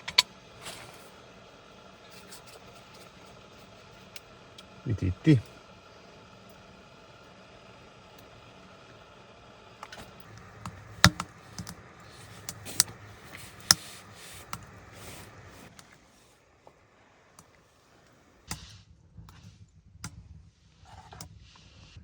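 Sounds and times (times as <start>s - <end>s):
sharp knocks and clicks: 10.5s - 13.8s.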